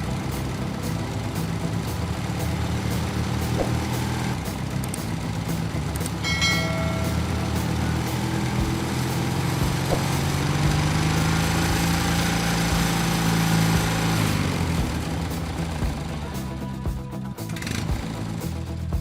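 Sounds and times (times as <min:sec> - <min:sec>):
diesel engine running: 0:00.0 - 0:19.0
high-pitched tone: 0:06.2 - 0:08.8.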